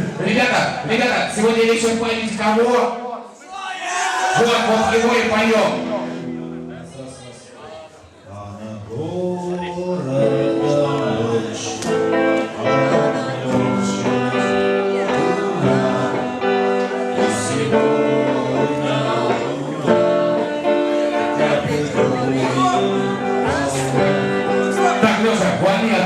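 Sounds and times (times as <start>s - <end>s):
strummed guitar chords: 4.8s - 7.0s, 9.8s - 26.0s
person singing: 8.3s - 26.0s.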